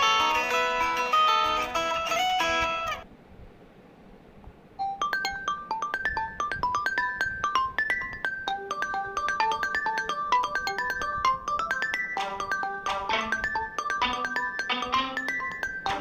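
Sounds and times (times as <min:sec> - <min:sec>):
bright mallet-like ringtone melody: 0:04.8 - 0:16.0
plucked guitar-like ringtone: 0:04.8 - 0:16.0.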